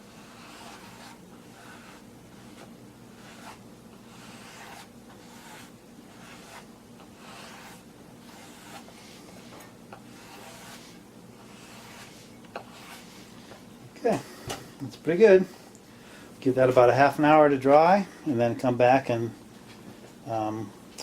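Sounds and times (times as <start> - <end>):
steady low hum: 0.0 - 21.0
fingers rubbing foam: 0.2 - 13.2.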